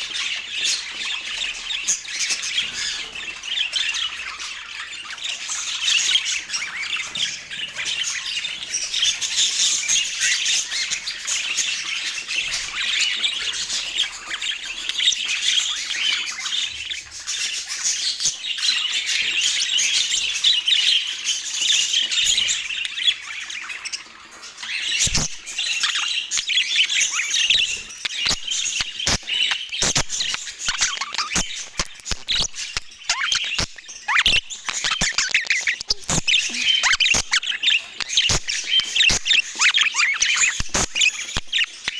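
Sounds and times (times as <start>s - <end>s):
budgerigars chattering: 0.0s - 41.9s
sharp clicks: 28.3s - 41.9s.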